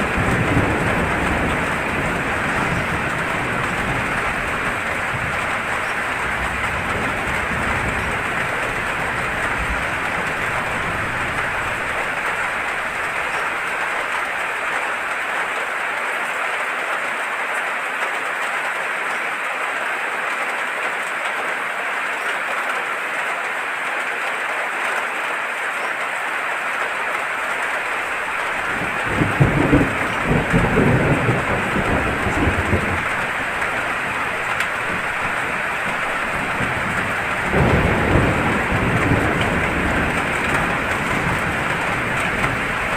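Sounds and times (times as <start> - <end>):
thunder rumbling: 0.0 - 15.1, 27.8 - 42.9
heavy rain: 0.0 - 42.9.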